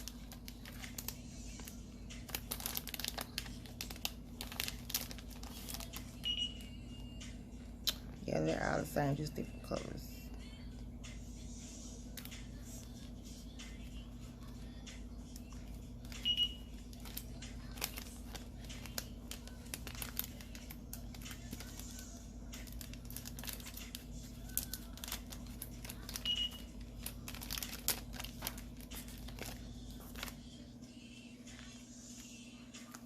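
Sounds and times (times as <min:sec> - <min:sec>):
plastic packaging crinkling: 0:00.0 - 0:06.3, 0:15.6 - 0:30.5.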